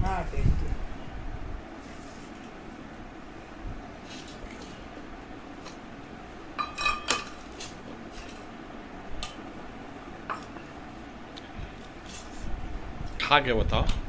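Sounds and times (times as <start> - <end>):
cutlery clinking against dishes: 6.6 - 8.5, 10.3 - 10.7.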